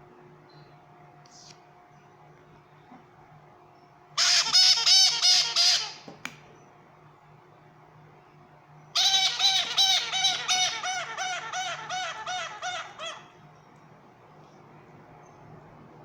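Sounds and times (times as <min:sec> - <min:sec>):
parrot squawking: 0:04.2 - 0:06.1, 0:09.0 - 0:13.4.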